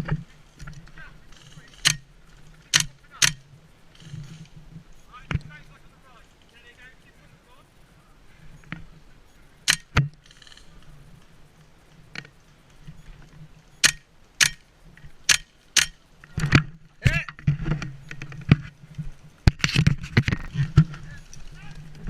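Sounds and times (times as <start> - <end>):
gear rattling: 0.0 - 4.6
airsoft gun shots: 2.7 - 3.4, 9.7 - 10.1, 13.8 - 14.6.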